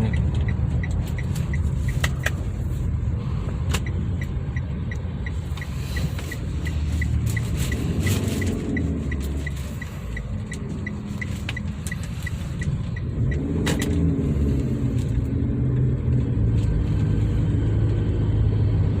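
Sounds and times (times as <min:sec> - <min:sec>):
indicator ticking: 0:00.0 - 0:02.3, 0:03.8 - 0:13.5
car cabin rumble: 0:00.0 - 0:18.1.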